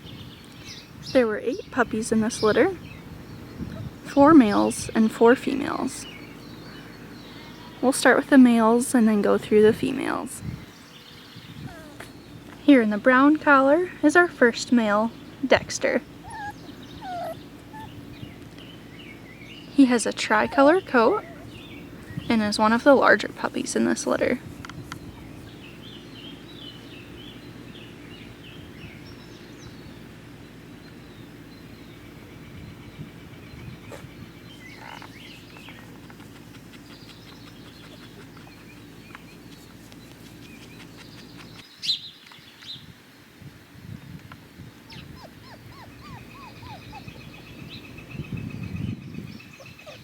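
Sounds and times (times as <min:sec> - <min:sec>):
low background noise: 0:00.0 - 0:48.9
puppy whimpering and yipping: 0:11.6 - 0:12.2, 0:16.2 - 0:18.1, 0:20.3 - 0:21.6, 0:44.9 - 0:47.8, 0:49.6 - 0:50.0.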